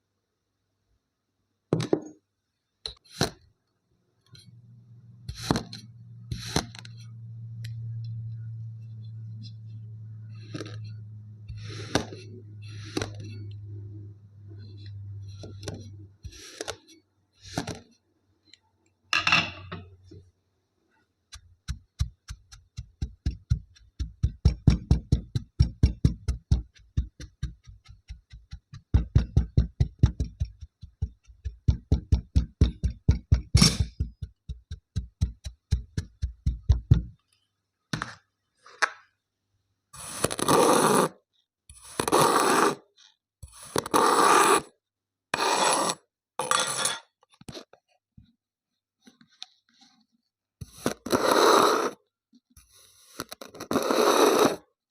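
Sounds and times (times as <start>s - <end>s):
knife chopping sand: 21.4s - 37.1s.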